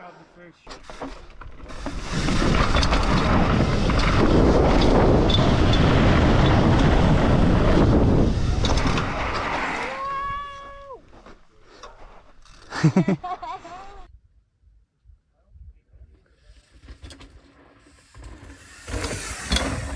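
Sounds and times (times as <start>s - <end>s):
bike tyres skidding on dirt: 0.7s - 11.4s, 16.5s - 19.9s
wind rushing over microphone: 1.8s - 10.6s.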